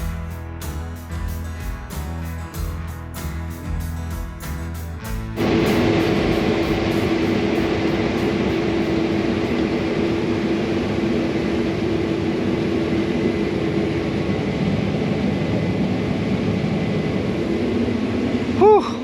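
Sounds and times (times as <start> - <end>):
combine harvester droning: 5.0 - 19.0.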